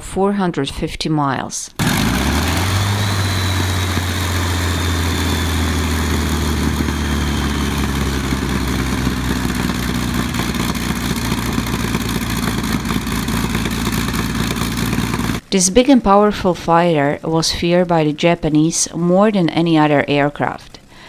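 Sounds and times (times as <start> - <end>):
piston aero engine droning: 1.8 - 15.4.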